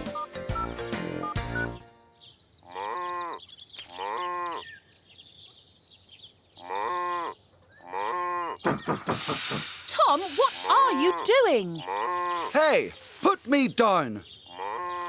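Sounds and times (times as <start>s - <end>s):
cartoon animal call: 10.3s - 12.6s.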